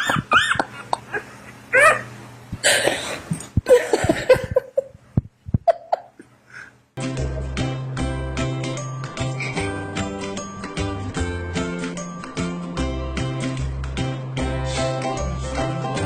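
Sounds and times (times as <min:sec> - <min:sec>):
dog yipping: 0:01.7 - 0:02.1
music: 0:07.0 - 0:16.0.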